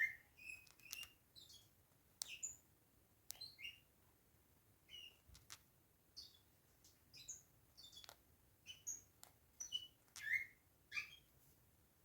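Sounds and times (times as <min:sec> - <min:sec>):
parakeet chirping: 0:04.9 - 0:05.2, 0:07.1 - 0:11.3.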